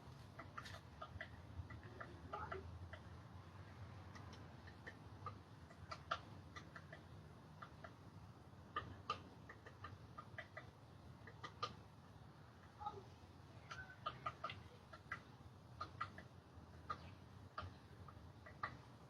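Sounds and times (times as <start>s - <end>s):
clicking and chirps from a tree: 4.1s - 8.0s.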